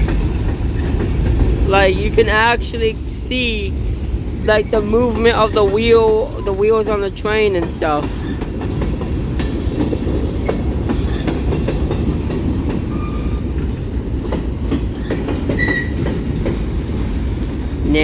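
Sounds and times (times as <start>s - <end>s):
train wheels rumbling on rails: 0.0s - 18.0s
high wheel squeals: 12.9s - 13.7s, 15.0s - 16.0s.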